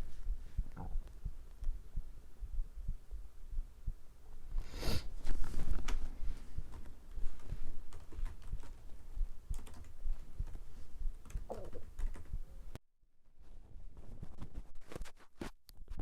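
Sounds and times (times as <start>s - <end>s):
low steady thumping: 0.0s - 12.8s
stomach growling: 0.7s - 1.1s, 11.4s - 11.9s.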